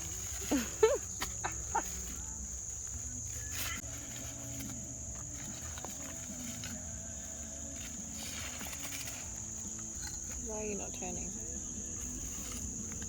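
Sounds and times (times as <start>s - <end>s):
insect chorus droning: 0.0s - 13.0s
brief rustle: 7.7s - 10.4s.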